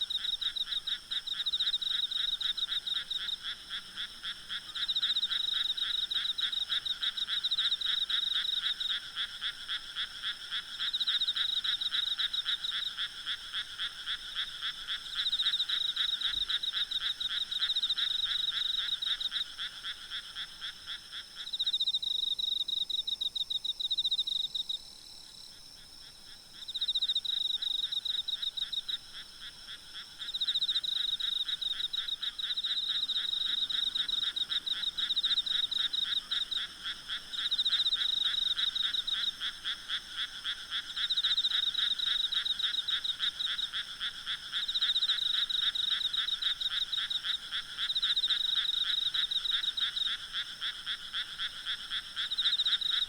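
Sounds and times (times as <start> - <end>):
frogs croaking and trilling: 0.0 - 53.0.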